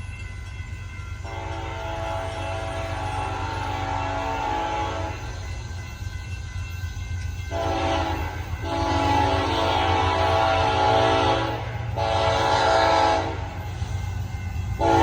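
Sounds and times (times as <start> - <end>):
locomotive horn blasts: 1.3 - 5.3, 7.5 - 13.5, 14.8 - 15.0.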